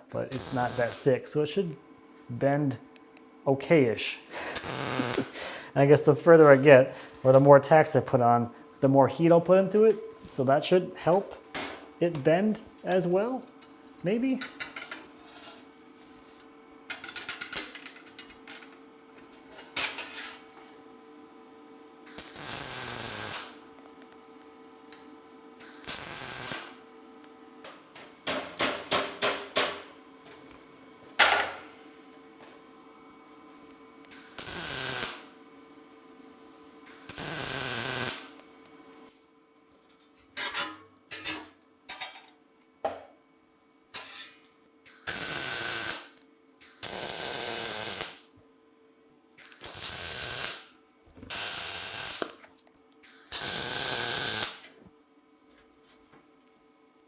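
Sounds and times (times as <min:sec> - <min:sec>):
welder tack welding: 0:00.1 - 0:01.2, 0:04.4 - 0:05.4, 0:22.1 - 0:23.6, 0:25.6 - 0:26.8, 0:34.1 - 0:35.3, 0:36.9 - 0:38.4, 0:44.9 - 0:48.3, 0:49.4 - 0:50.7, 0:51.3 - 0:52.4, 0:53.0 - 0:54.7.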